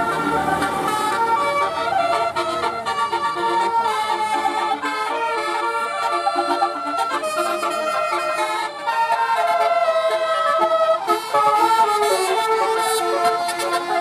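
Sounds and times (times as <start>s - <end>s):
musical air horn melody: 0.0s - 14.0s.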